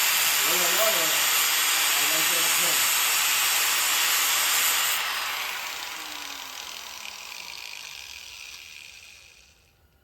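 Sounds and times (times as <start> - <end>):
power tool whir winding down: 0.0 - 9.9.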